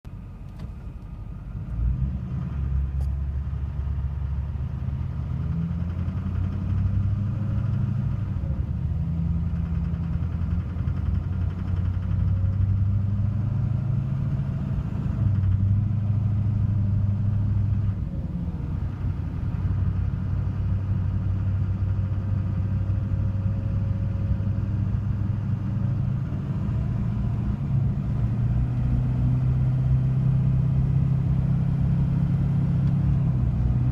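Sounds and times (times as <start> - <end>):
diesel engine droning: 0.0 - 33.9
engine knocking: 9.4 - 13.1.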